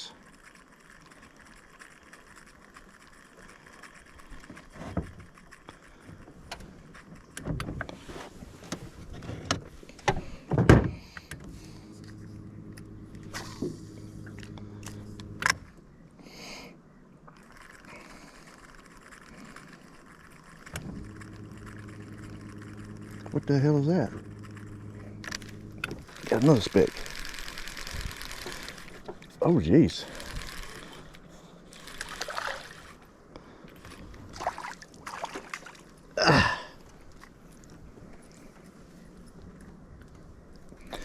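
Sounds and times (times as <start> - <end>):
steady mechanical hum: 0.0 - 41.0.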